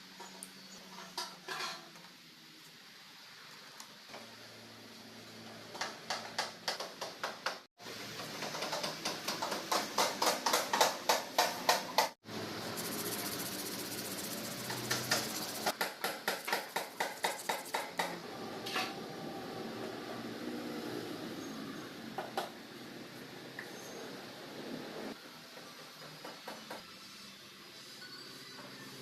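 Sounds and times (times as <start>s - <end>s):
wheel rhythmic ticking: 12.8s - 15.7s, 16.3s - 18.1s.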